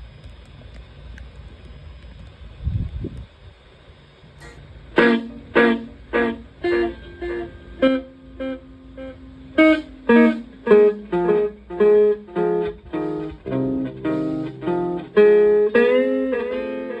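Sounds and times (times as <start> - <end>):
short plucked-sounding synth notes: 4.4 - 16.2.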